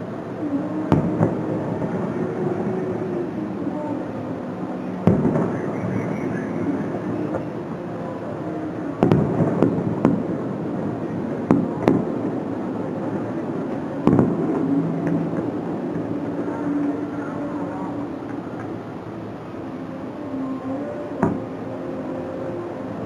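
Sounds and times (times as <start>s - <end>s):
low background rumble: 0.0s - 23.0s
fireworks bangs: 0.9s - 3.2s, 5.0s - 7.4s, 8.9s - 17.1s.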